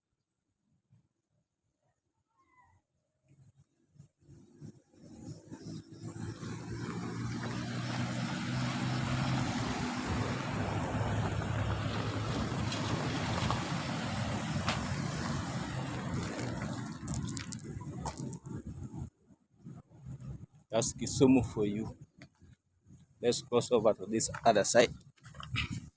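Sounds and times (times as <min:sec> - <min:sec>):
vehicle engine humming: 0:04.6 - 0:18.8.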